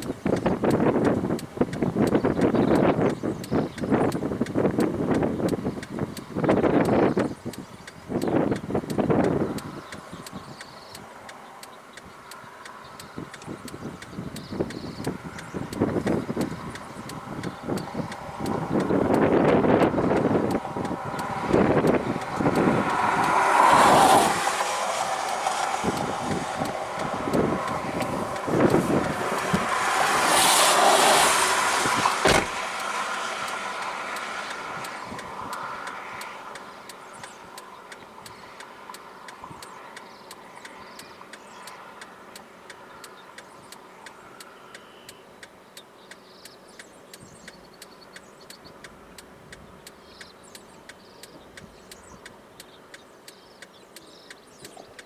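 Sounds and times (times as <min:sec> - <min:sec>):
strong wind buffeting a car: 0:00.0 - 0:11.0, 0:12.0 - 0:41.7
steady light ticking: 0:00.0 - 0:30.6, 0:31.6 - 0:55.0.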